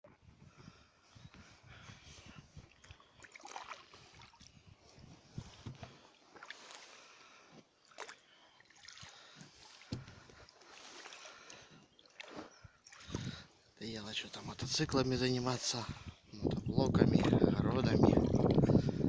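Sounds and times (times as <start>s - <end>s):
paddle swishing water: 1.4s - 13.6s.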